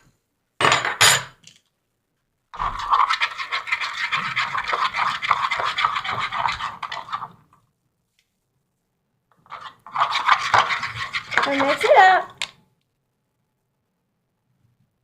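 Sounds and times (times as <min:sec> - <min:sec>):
slime mixing in container: 0:02.6 - 0:07.4, 0:09.4 - 0:12.3.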